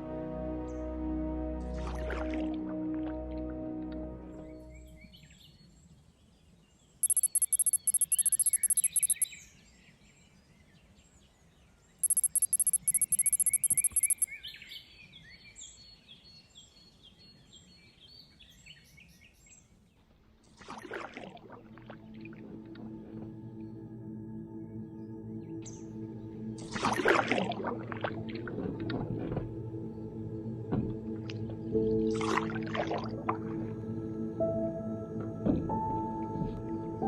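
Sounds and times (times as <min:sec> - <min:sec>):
high fast-pulsing trill: 0:07.0 - 0:09.2, 0:12.0 - 0:14.3.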